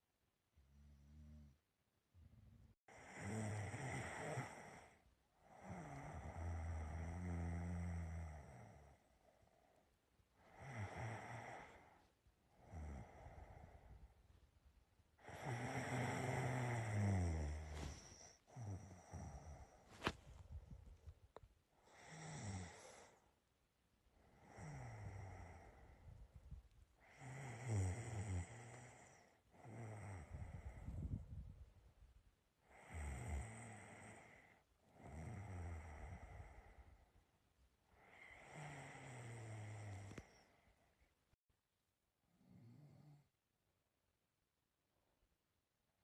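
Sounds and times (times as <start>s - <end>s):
person snoring: 2.9s - 9.1s, 10.4s - 14.0s, 15.2s - 20.2s, 21.8s - 23.2s, 24.3s - 26.0s, 27.0s - 31.2s, 32.7s - 37.0s, 38.0s - 40.6s.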